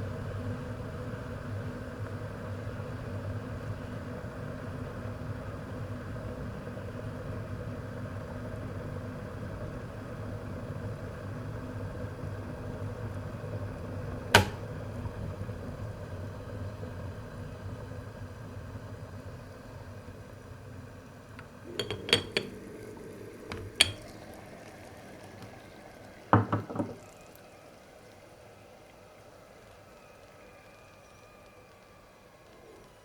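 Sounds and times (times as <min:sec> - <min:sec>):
kettle boiling water: 0:00.0 - 0:33.0
kettle switch click: 0:14.3 - 0:14.8, 0:23.5 - 0:24.0.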